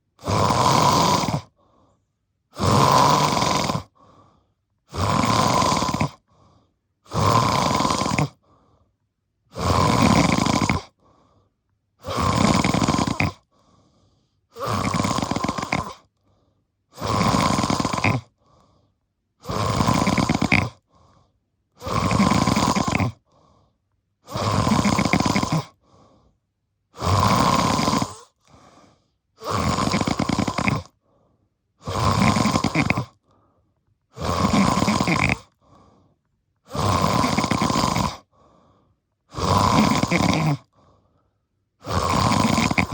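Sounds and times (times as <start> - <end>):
person snoring deeply: 0.2 - 1.6, 2.5 - 8.5, 9.5 - 11.2, 12.0 - 13.8, 14.5 - 16.0, 16.9 - 18.7, 19.4 - 21.2, 21.8 - 23.5, 24.2 - 26.2, 26.9 - 31.2, 31.8 - 33.4, 34.1 - 36.0, 36.6 - 41.0, 41.8 - 42.9.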